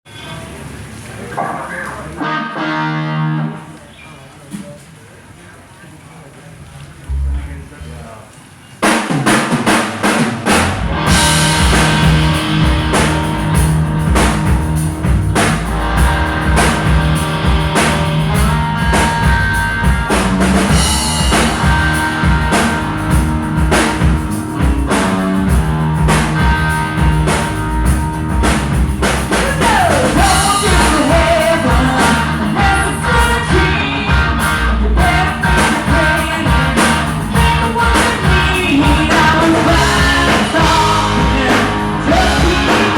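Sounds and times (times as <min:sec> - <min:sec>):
live rock band playing: 0:01.9 - 0:03.8, 0:08.8 - 0:42.9
drum kit: 0:08.8 - 0:42.9.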